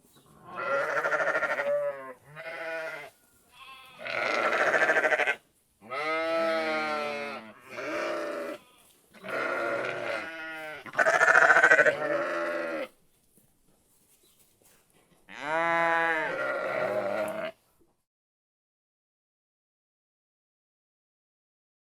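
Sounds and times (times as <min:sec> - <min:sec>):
sheep bleating: 0:00.4 - 0:12.9, 0:15.3 - 0:17.6.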